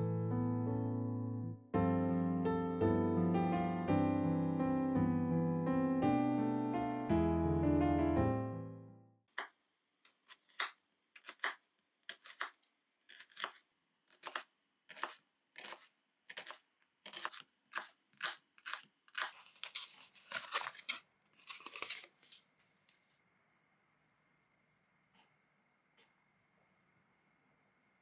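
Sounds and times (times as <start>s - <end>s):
knife cutting food: 9.4s - 20.6s.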